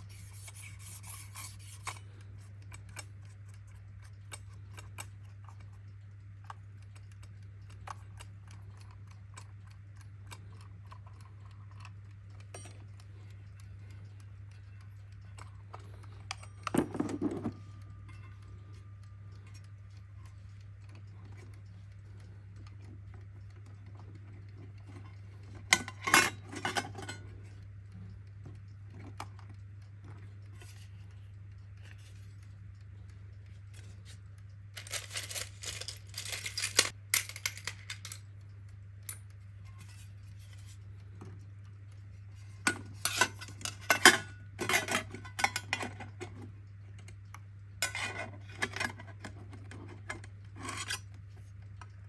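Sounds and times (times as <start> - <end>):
steady low hum: 0.0 - 52.0
small metal parts clinking: 34.8 - 38.3.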